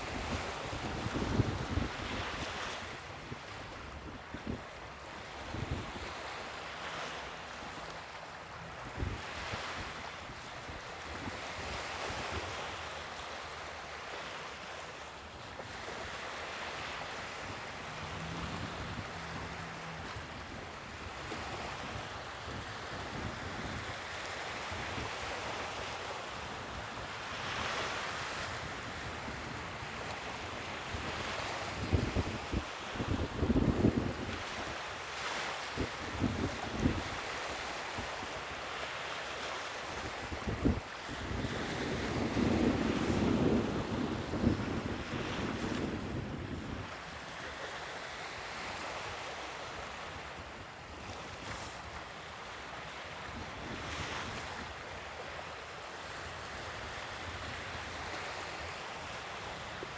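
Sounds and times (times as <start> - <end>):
wind buffeting the microphone: 0.0 - 6.4, 8.8 - 12.8, 15.6 - 38.3, 39.9 - 47.6, 53.2 - 54.8
sea waves washing ashore: 0.0 - 59.9.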